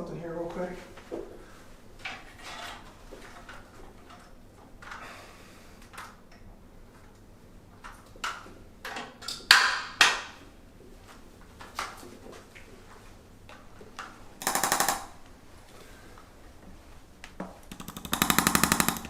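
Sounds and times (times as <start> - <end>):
loud sharp cracks: 14.4 - 15.2.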